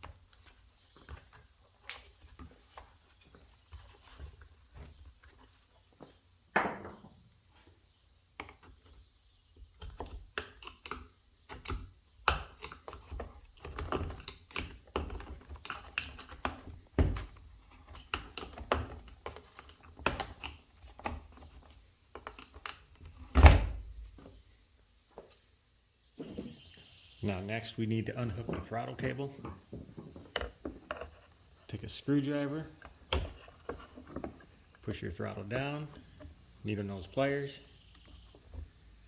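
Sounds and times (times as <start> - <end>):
clicks taps and rattles of parts: 9.6 - 23.2, 28.3 - 31.4, 32.7 - 35.0.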